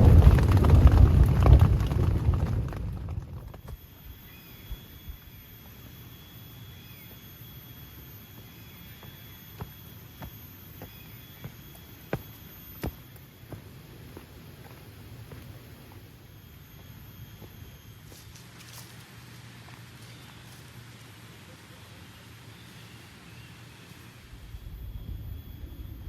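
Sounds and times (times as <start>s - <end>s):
steady high-pitched tone: 3.6s - 19.1s, 22.3s - 26.0s.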